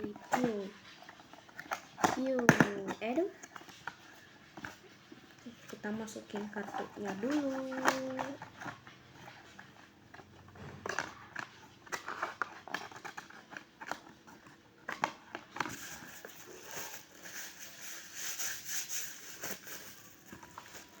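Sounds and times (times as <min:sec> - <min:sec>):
cardboard and plastic crinkling: 0:00.0 - 0:21.0.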